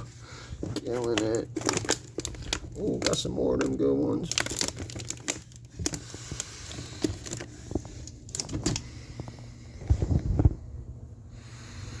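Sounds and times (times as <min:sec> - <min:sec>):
packages clicking and rustling: 0:00.1 - 0:10.5.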